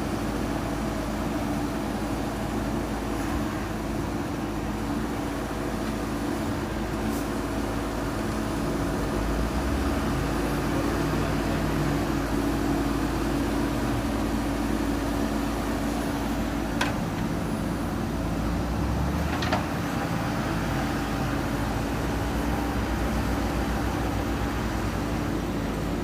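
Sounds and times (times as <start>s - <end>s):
backhoe diesel engine running: 0.0s - 26.0s.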